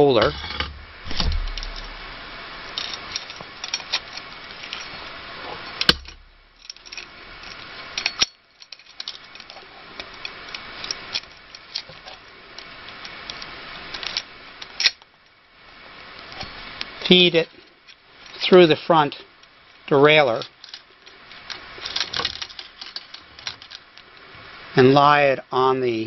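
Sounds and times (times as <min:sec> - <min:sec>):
bicycle chain clinking and rattling: 0:06.5 - 0:11.9.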